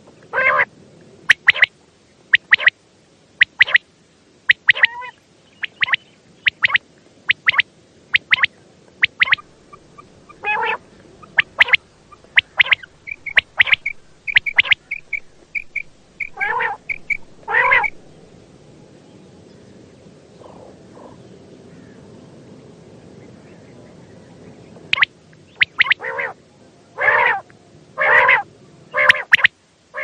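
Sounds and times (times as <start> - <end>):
quail calling: 0.3 - 0.7, 1.3 - 1.7, 2.3 - 2.8, 3.4 - 3.8, 4.5 - 18.3, 24.9 - 26.4, 27.0 - 27.4, 28.0 - 30.0.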